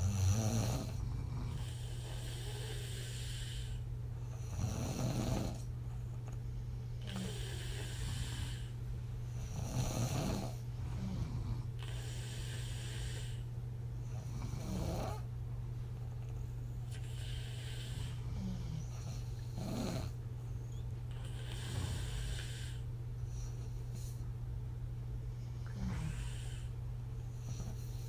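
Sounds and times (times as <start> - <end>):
woman snoring: 0.0 - 5.7, 7.0 - 8.8, 9.4 - 13.4, 14.2 - 15.2, 16.9 - 20.2, 21.1 - 22.8, 25.6 - 26.7
steady low hum: 0.0 - 28.0.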